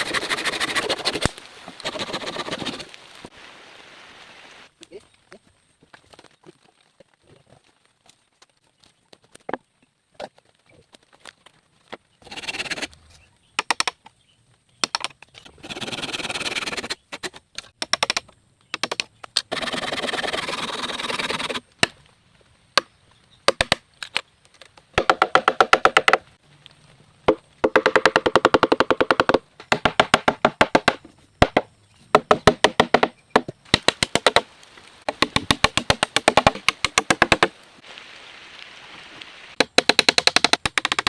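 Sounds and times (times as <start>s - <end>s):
rasping scraping of wood: 0.0s - 2.8s
wood cracking and knocking: 27.2s - 37.6s.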